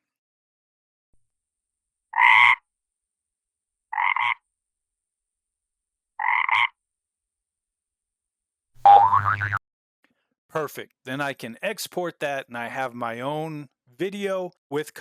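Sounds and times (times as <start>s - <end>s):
frog croaks: 2.1s - 2.7s, 3.9s - 4.5s, 6.2s - 6.8s
cartoon spring boing: 8.9s - 9.6s.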